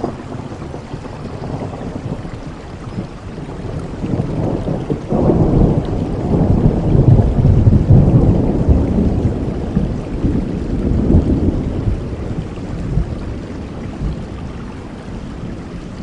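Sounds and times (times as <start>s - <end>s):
rain falling: 0.0s - 16.0s
thunder rolling: 0.0s - 16.0s.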